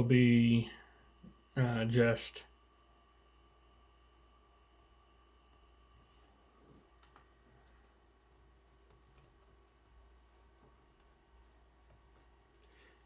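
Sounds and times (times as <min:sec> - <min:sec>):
computer keyboard typing: 0:07.0 - 0:13.0.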